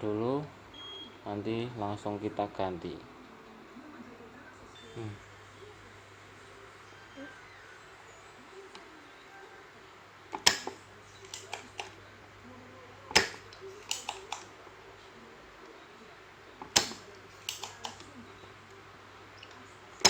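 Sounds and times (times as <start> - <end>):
light clicks: 10.3 - 12.0, 13.1 - 14.5, 16.6 - 18.1
hand tool snaps: 10.4 - 12.0, 13.1 - 14.5, 16.6 - 18.0.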